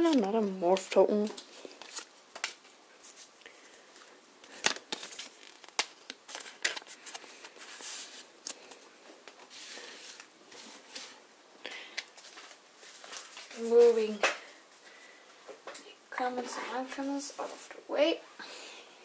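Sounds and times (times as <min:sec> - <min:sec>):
cards clicking and rustling: 0:00.0 - 0:03.3, 0:04.0 - 0:11.2.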